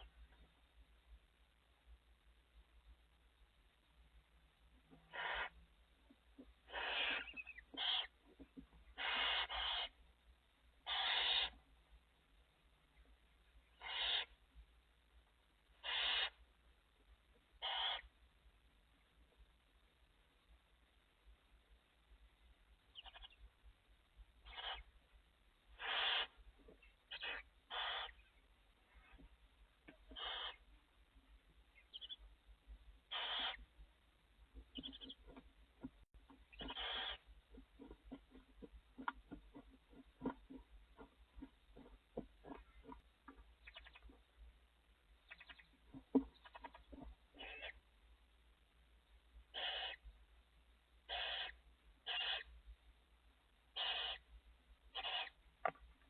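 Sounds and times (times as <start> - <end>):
owl hissing calls: 5.1 - 5.6, 6.6 - 8.2, 9.0 - 10.0, 10.8 - 11.6, 13.7 - 14.4, 15.7 - 16.4, 17.6 - 18.1, 23.0 - 23.4, 24.4 - 24.9, 25.7 - 26.4, 27.1 - 28.2, 30.1 - 30.7, 33.1 - 33.6, 36.6 - 37.3, 47.3 - 47.8, 49.5 - 50.0, 51.1 - 52.5, 53.7 - 54.3, 54.9 - 55.4.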